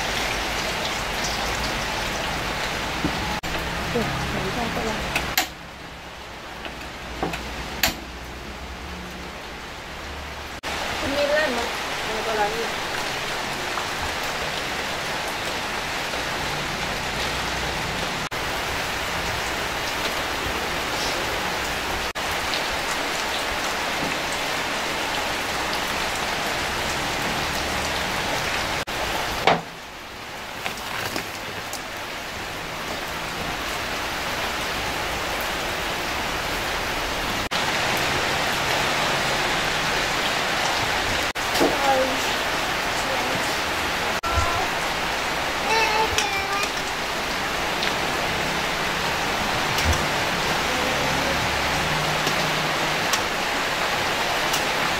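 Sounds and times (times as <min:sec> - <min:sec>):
steady rain: 0:00.0 - 0:54.9
rain drop ticks: 0:45.7 - 0:47.0, 0:47.7 - 0:48.0, 0:52.0 - 0:53.3.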